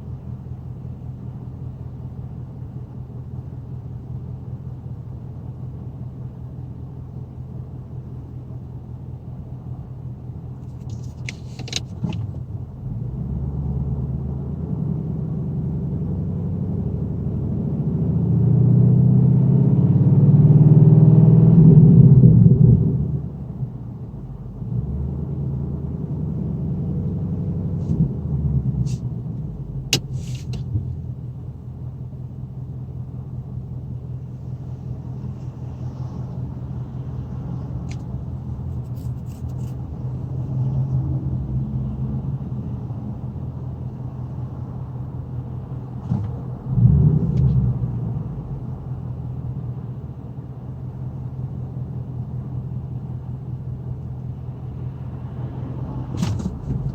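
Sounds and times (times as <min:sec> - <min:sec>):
car engine idling: 0:00.0 - 0:13.1, 0:25.8 - 0:56.9.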